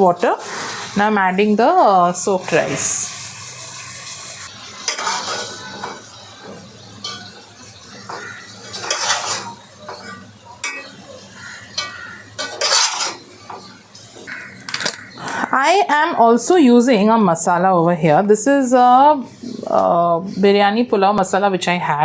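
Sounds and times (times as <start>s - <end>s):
utensil scraping a pot: 8.0s - 10.8s, 11.4s - 13.2s.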